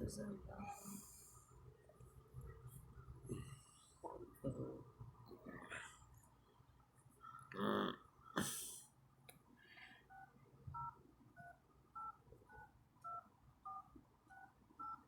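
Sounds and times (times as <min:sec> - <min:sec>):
phone keypad dialing tones: 0:10.1 - 0:15.0.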